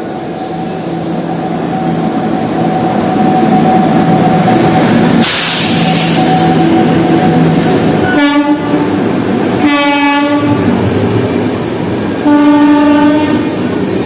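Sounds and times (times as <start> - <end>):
express train rumbling past: 0.0 - 14.0
locomotive horn blasts: 8.0 - 8.8, 9.6 - 10.6, 12.2 - 13.5.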